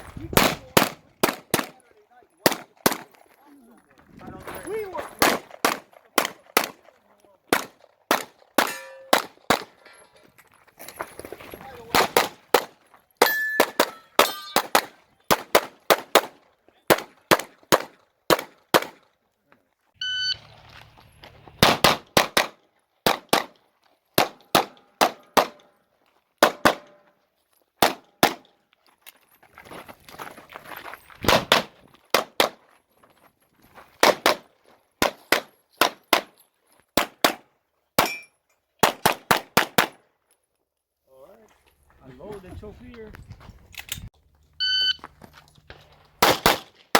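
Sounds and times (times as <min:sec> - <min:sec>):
pistol shots: 0:00.4 - 0:01.8, 0:05.2 - 0:06.9, 0:07.5 - 0:09.8, 0:11.9 - 0:19.0, 0:21.6 - 0:23.6, 0:24.2 - 0:25.7, 0:26.4 - 0:27.0, 0:31.3 - 0:32.6, 0:46.2 - 0:46.9
steel targets ringing: 0:08.6 - 0:09.2, 0:13.2 - 0:14.8.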